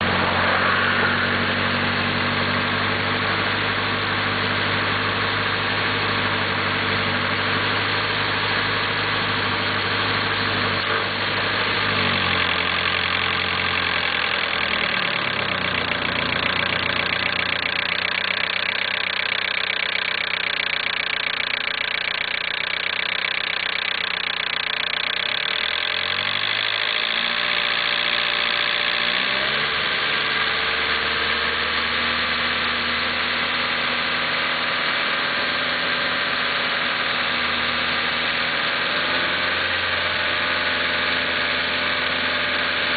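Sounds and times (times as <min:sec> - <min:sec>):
car engine idling and revving: 0:00.0 - 0:42.9.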